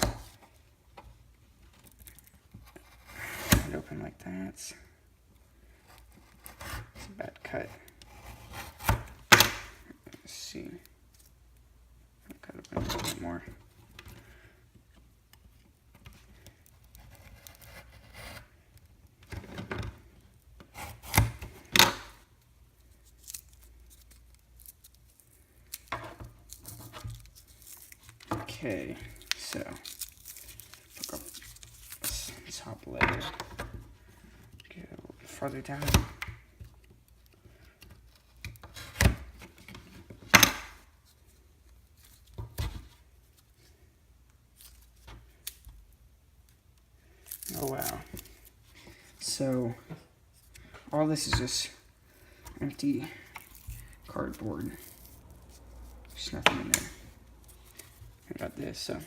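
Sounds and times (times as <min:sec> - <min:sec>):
blade scraping cardboard tube: 0:02.7 - 0:03.8.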